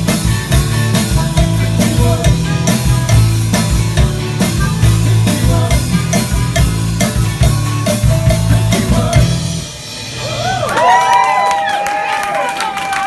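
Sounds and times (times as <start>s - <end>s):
rock music with drums: 0.0s - 11.0s
crowd cheering: 10.1s - 13.0s.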